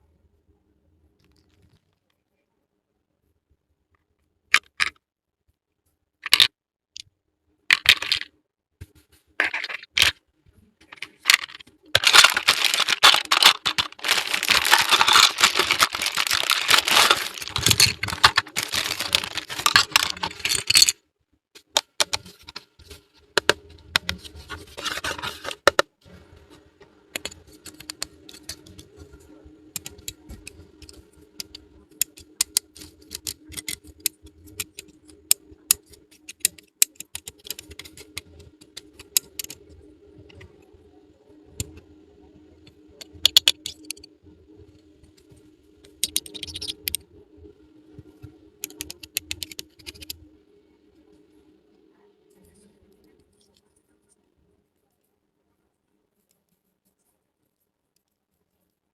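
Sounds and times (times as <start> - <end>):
plastic toy pieces clicking: 4.5 - 5.0, 6.2 - 6.5, 7.7 - 8.3, 10.8 - 21.0, 35.7 - 39.6, 43.0 - 44.0, 46.0 - 47.0, 48.6 - 50.2
faint steady hum: 7.3 - 58.9
plastic packaging crinkling: 10.8 - 20.9, 24.0 - 25.8.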